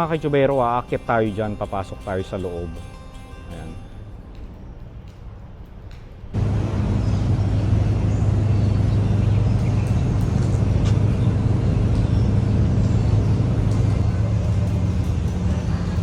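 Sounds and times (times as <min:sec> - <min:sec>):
street traffic: 0:00.0 - 0:16.0
vehicle engine humming: 0:06.3 - 0:16.0.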